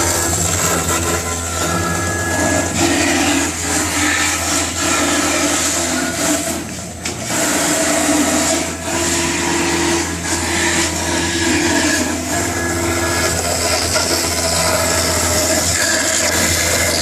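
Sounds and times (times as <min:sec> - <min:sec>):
router motor hum: 0:00.0 - 0:17.0
stepper motor tones: 0:00.0 - 0:17.0.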